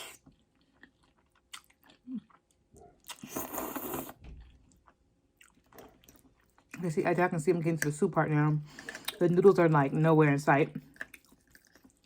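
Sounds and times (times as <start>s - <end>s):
wet mouth clicks and chewing: 0.0s - 6.8s, 10.8s - 12.0s
noisy bite or slurp: 3.1s - 4.2s.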